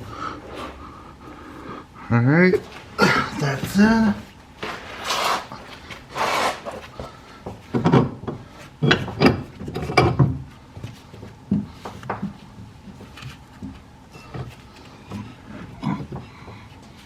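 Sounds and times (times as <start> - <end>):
car parts and tools knocking: 7.4 - 10.4.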